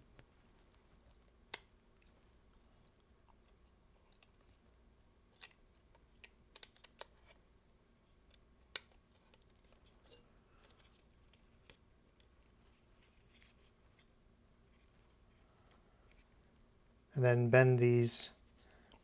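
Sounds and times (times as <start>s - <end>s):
plastic camera parts clicking: 5.4s - 7.4s.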